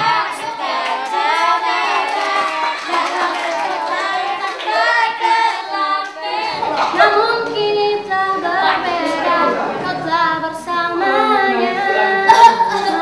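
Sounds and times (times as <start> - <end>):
young voices singing in harmony: 0.0 - 13.0
hand clapping: 0.6 - 5.1.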